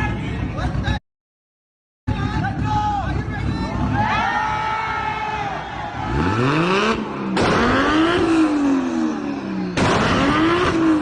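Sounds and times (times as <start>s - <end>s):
car engine revving: 5.8s - 11.0s.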